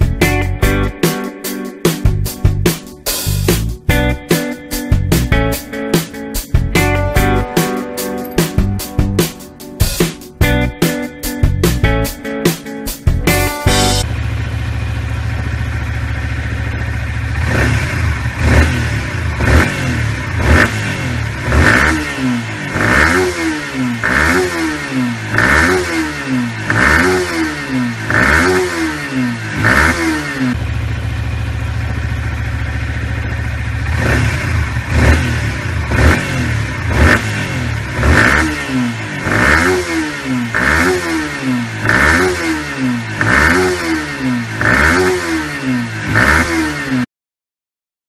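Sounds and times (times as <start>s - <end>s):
motorcycle engine revving: 0.0s - 47.1s
motorcycle engine idling: 13.2s - 44.8s.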